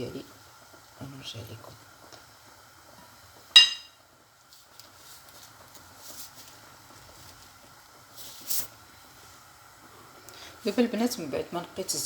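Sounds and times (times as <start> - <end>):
dish clinking: 3.6 - 4.0.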